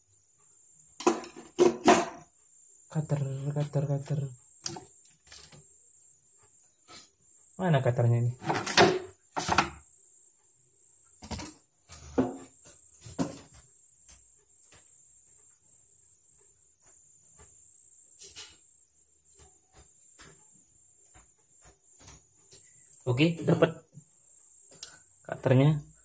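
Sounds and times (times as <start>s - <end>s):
objects knocking and clattering: 1.0s - 2.3s, 8.4s - 9.8s, 11.2s - 13.6s.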